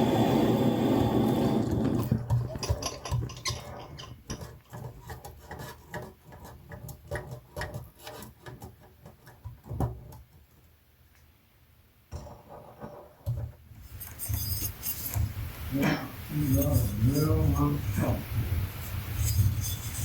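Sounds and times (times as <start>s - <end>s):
rubbing: 3.2s - 9.3s, 13.8s - 20.0s.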